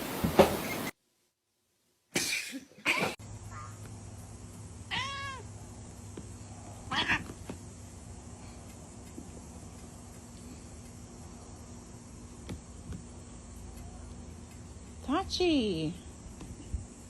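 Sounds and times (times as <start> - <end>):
steady low hum: 3.2 - 17.0
cat meowing: 4.9 - 5.5, 6.9 - 7.4.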